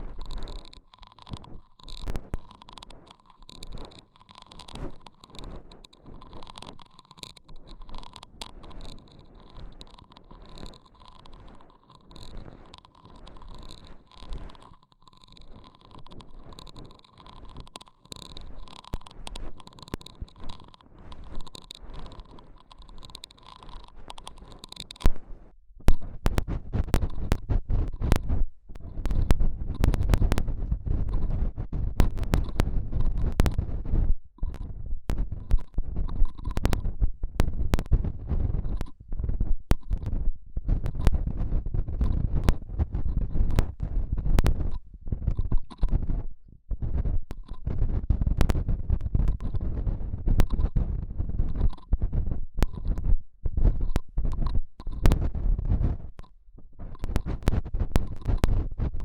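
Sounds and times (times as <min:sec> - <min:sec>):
soft scratching and rustling: 0:00.0 - 0:59.0
muffled rubbing on microphone: 0:18.3 - 0:59.0.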